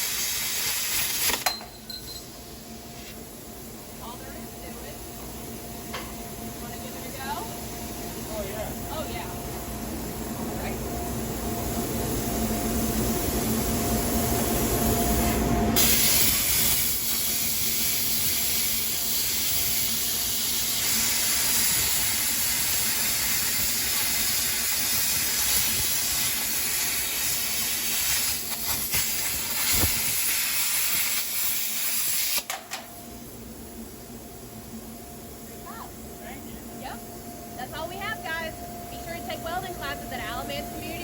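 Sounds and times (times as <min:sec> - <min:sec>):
plasma cutter hissing: 0:00.0 - 0:01.5, 0:15.8 - 0:32.8
steady hum: 0:00.0 - 0:41.0.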